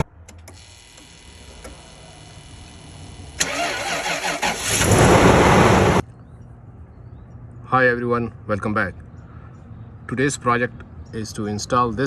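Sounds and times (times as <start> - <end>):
car engine starting and running rough: 0.0 - 6.0.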